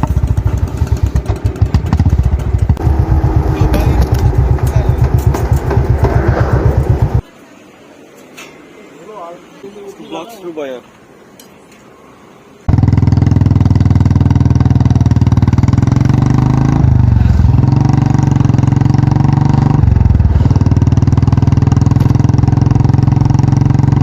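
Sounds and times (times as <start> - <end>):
motorcycle engine thumping: 0.0 - 7.2, 12.7 - 24.0.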